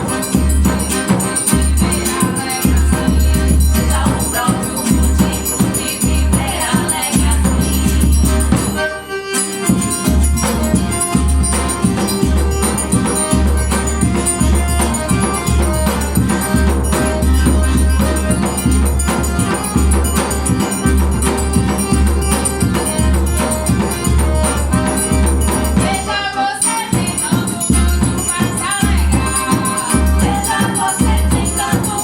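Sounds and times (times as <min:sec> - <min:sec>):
accordion melody: 0:00.0 - 0:32.0
bass drum beats: 0:10.0 - 0:25.9.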